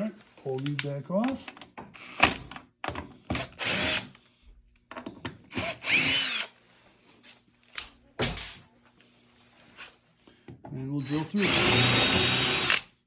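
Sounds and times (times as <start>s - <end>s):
power drill whirring: 2.0s - 2.4s, 3.4s - 4.1s, 5.5s - 6.6s, 11.0s - 12.9s.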